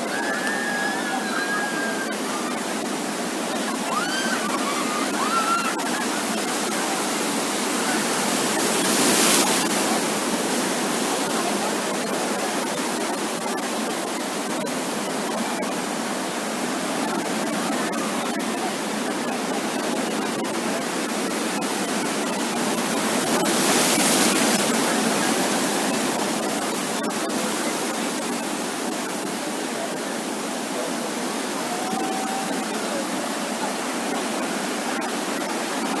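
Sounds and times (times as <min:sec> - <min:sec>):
sea waves washing onto beach: 0:00.0 - 0:36.0.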